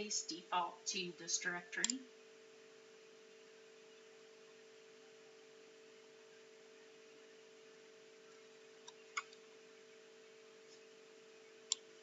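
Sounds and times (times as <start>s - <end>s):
computer mouse click: 1.8s - 2.0s, 11.7s - 11.9s.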